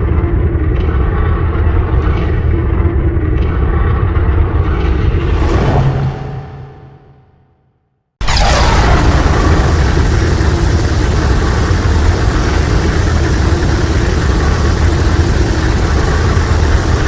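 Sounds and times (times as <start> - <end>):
falling whoosh: 5.2 - 7.3
monster breath blast with rumble: 8.2 - 16.0.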